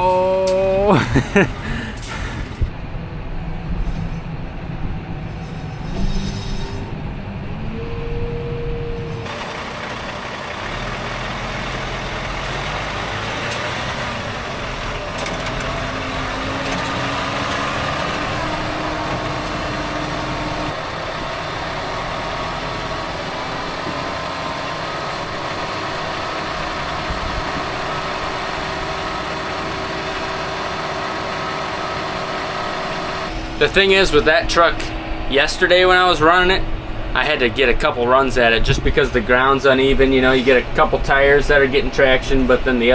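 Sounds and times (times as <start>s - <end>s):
truck engine running hard: 0.0s - 3.0s, 9.0s - 34.0s.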